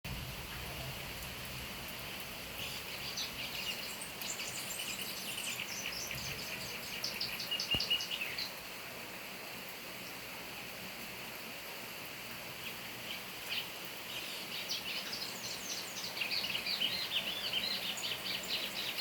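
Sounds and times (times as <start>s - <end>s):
rain hissing: 0.1s - 19.0s
bird twittering song: 2.6s - 8.6s, 12.6s - 19.0s.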